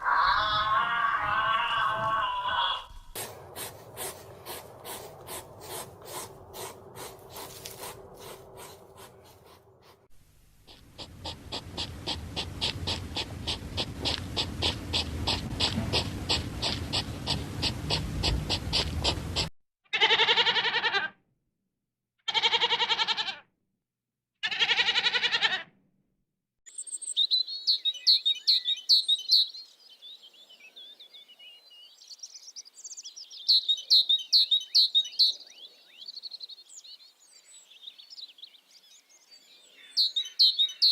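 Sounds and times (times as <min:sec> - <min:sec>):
loud drawn-out animal calls: 0:00.0 - 0:10.0, 0:10.7 - 0:21.2, 0:22.2 - 0:23.5, 0:24.4 - 0:25.7
fast rhythmic rasping: 0:10.7 - 0:19.5
small birds chirping: 0:10.7 - 0:19.5, 0:26.7 - 0:40.9.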